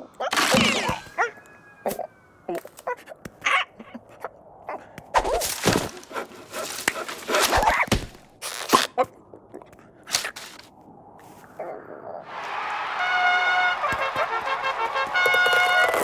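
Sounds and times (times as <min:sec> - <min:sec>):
cartoon bird vocal noises: 0:00.0 - 0:04.9.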